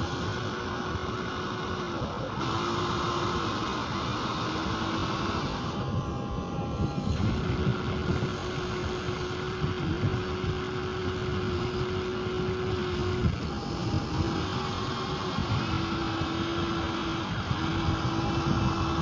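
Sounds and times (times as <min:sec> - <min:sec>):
electric motor and gearbox whining: 0:00.0 - 0:19.0.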